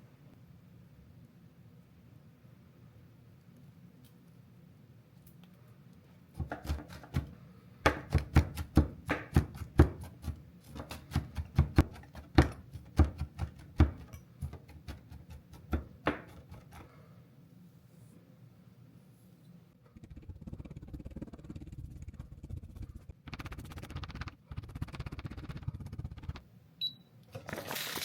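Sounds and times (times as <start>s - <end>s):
knife chopping on cutting board: 6.4s - 16.9s.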